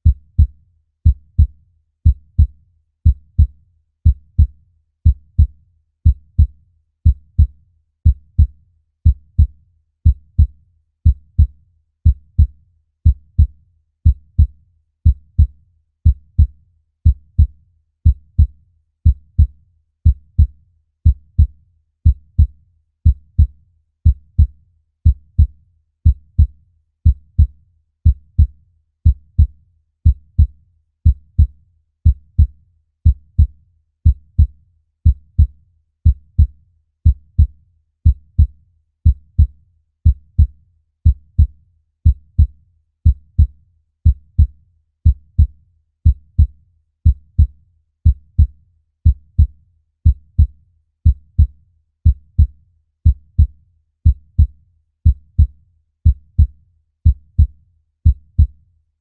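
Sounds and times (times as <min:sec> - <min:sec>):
heartbeat thumps: 0:08.1 - 0:09.5, 0:44.1 - 0:46.5, 0:47.1 - 0:50.5, 0:51.1 - 0:58.6.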